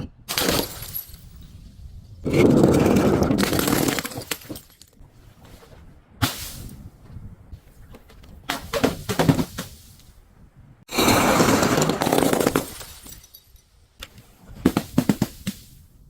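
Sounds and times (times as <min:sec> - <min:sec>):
glass crushing and shattering: 0:00.3 - 0:01.6, 0:02.5 - 0:05.0, 0:11.4 - 0:13.8.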